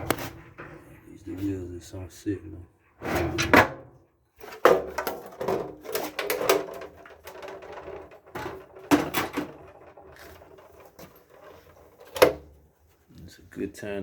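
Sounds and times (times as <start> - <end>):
sheet metal clanking and scraping: 0.0 - 1.6, 3.0 - 12.5.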